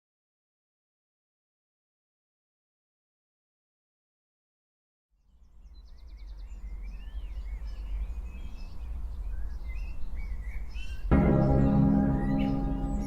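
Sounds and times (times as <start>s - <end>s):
birds singing: 5.2s - 13.0s.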